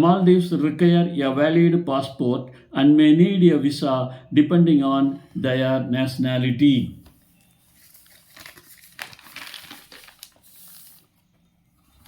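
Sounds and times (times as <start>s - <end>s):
crinkly rustling: 7.2s - 12.0s.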